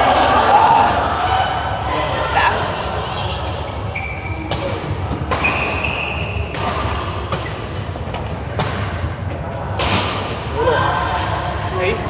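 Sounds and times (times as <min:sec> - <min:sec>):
murmur of hall: 0:00.0 - 0:12.0
shoe squeak: 0:03.9 - 0:04.6, 0:05.4 - 0:06.4
racket striking shuttlecock: 0:04.5 - 0:09.0, 0:09.8 - 0:10.4.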